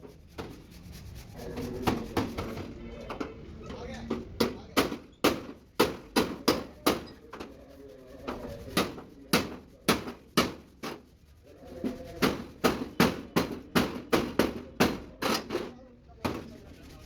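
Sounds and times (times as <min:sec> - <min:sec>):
hammer striking sheet metal: 0:04.4 - 0:07.2, 0:12.2 - 0:16.5.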